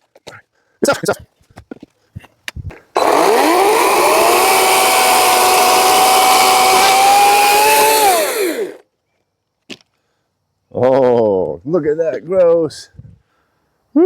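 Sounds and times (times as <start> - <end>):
chainsaw whine: 3.0 - 8.8.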